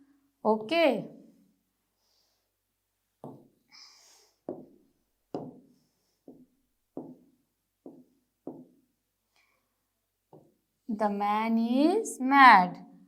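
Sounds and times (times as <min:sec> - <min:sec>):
hollow knocks on hard surface: 0:03.2 - 0:03.6, 0:04.5 - 0:08.8, 0:10.3 - 0:10.6.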